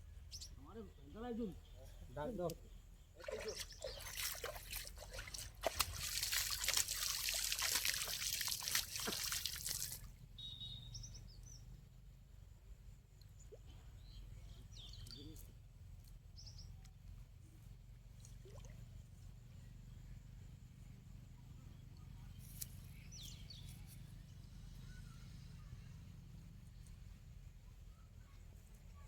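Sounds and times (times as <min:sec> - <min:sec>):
water splashing and trickling: 0:03.2 - 0:10.2, 0:18.2 - 0:18.7
short high bird chirps: 0:10.4 - 0:11.6.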